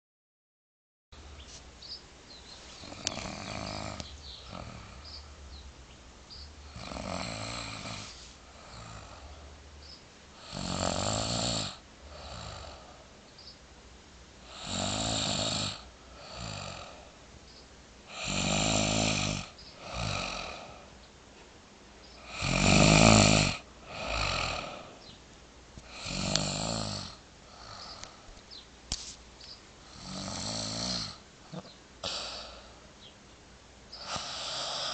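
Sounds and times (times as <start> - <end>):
woman snoring: 2.8 - 5.2, 6.6 - 9.4, 10.3 - 13.1, 14.4 - 17.2, 18.1 - 20.9, 22.2 - 25.0, 25.8 - 28.3, 29.8 - 32.8, 34.0 - 34.9.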